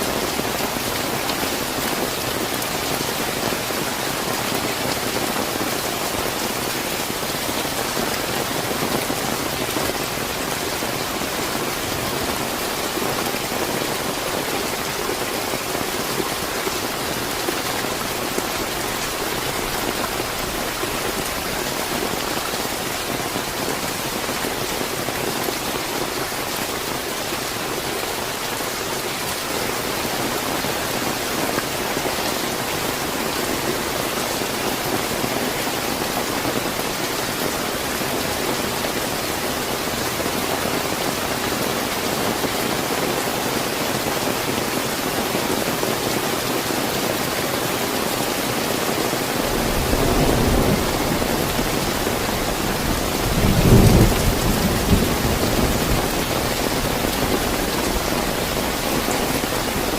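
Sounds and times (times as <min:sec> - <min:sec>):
heavy rain: 0:00.0 - 0:59.9
deep thunder rumble: 0:49.5 - 0:58.0.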